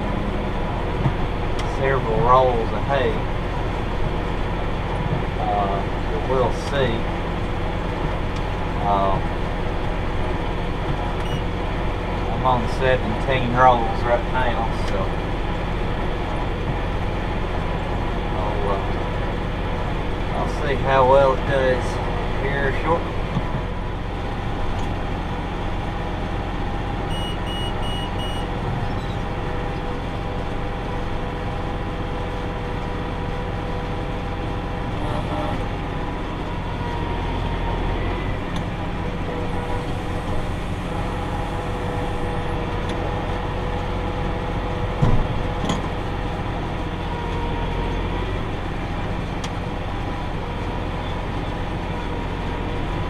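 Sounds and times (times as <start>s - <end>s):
tractor engine running: 0.0s - 53.0s
short high beeps: 11.2s - 11.5s, 27.1s - 29.2s.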